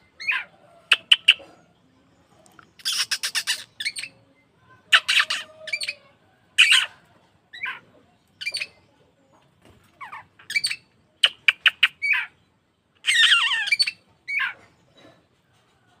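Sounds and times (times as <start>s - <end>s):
magpie-robin singing: 0.0s - 1.5s, 2.7s - 4.2s, 7.5s - 8.8s, 10.0s - 12.4s, 13.0s - 14.6s.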